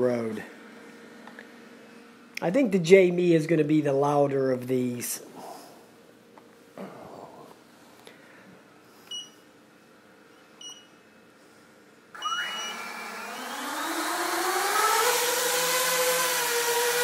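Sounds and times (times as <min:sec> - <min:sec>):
drone motors whining: 0:12.2 - 0:17.0.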